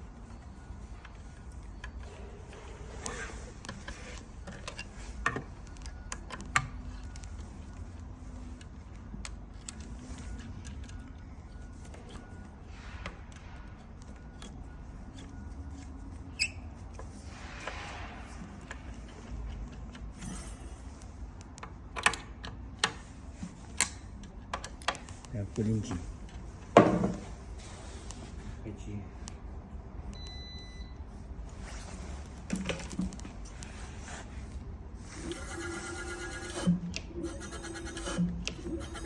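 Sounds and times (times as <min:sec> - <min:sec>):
low steady hum: 0:23.1 - 0:35.5.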